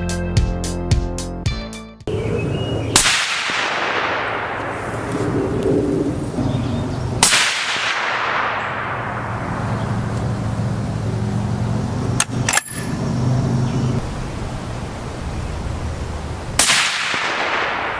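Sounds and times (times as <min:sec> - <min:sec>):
steady low hum: 0:02.1 - 0:16.6
suppressed rifle shots: 0:02.9 - 0:09.6, 0:16.6 - 0:17.9.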